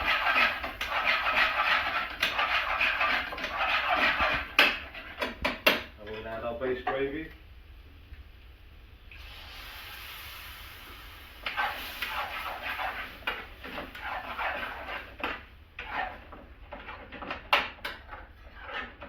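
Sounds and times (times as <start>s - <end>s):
ladle scraping a pan: 0.0s - 5.4s, 11.4s - 19.0s
curry sizzling in a pan: 9.1s - 16.2s.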